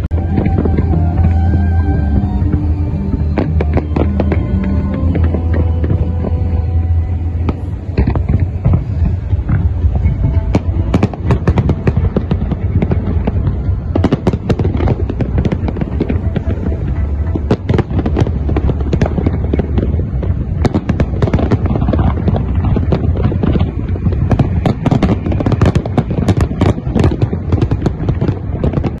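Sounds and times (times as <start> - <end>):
fireworks bangs and crackling: 0.0 - 29.0
low rumble of explosions: 0.0 - 29.0.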